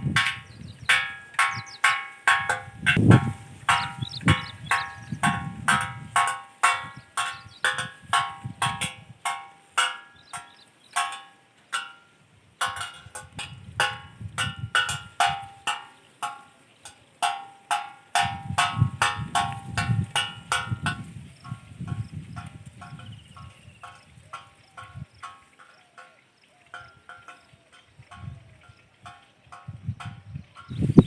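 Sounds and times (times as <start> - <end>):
ringing metallic strikes: 0.0 - 26.0.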